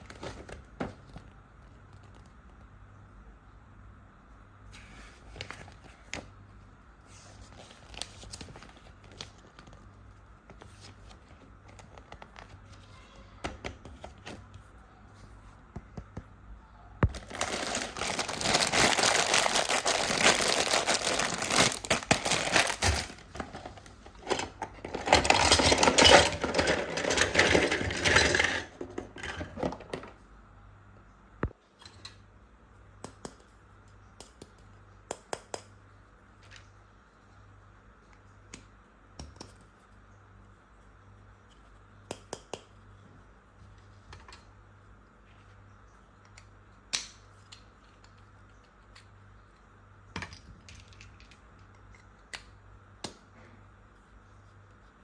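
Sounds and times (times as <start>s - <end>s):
plastic packaging crinkling and tearing: 7.5s - 9.8s, 17.1s - 28.1s.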